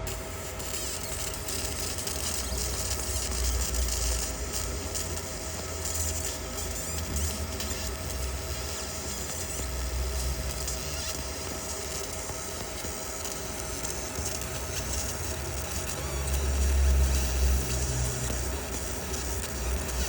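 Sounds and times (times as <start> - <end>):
laser engraving machine humming: 0.0 - 20.0.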